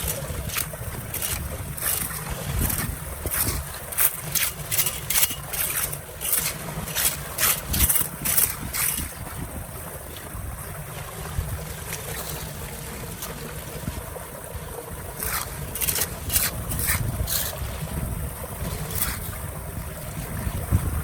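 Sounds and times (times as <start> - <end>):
flowing water: 0.0 - 21.0
wind rumbling on microphone: 0.0 - 21.0.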